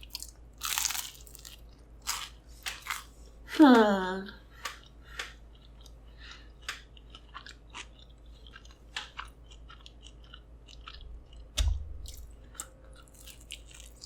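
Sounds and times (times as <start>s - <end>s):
person chewing with wet mouth sounds: 4.3s - 14.0s
low thud: 11.6s - 12.1s.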